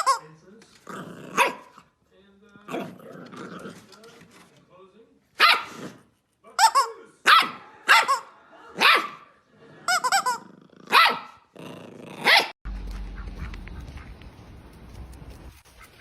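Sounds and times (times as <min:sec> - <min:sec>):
dog barking: 0:01.3 - 0:01.8, 0:05.4 - 0:05.9, 0:07.2 - 0:09.4, 0:10.9 - 0:11.4, 0:12.2 - 0:12.6.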